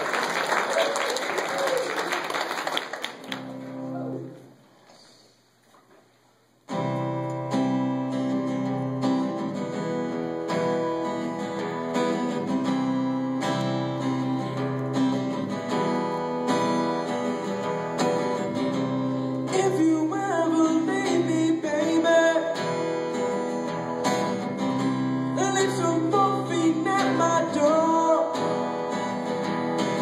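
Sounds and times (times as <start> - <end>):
acoustic guitar strumming chords: 6.7 - 30.0.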